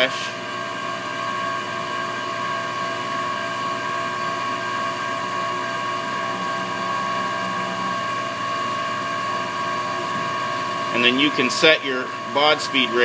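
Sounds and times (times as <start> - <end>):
desktop mill machine whine: 0.0 - 13.0.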